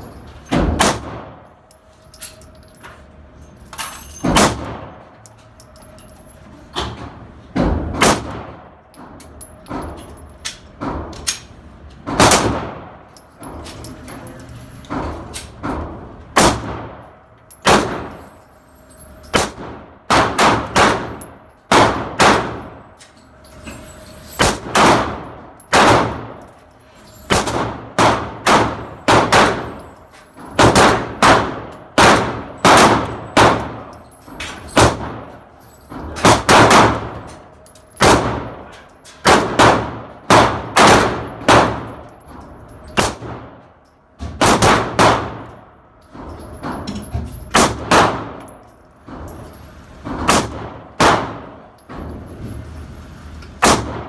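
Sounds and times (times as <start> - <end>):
pistol shots: 8.0 - 8.6, 16.4 - 17.0, 17.6 - 18.1, 19.4 - 22.6, 24.4 - 26.3, 27.3 - 29.8, 30.6 - 33.8, 36.2 - 37.1, 39.2 - 41.9, 44.4 - 45.5, 47.6 - 48.4, 50.3 - 51.6, 53.6 - 54.0.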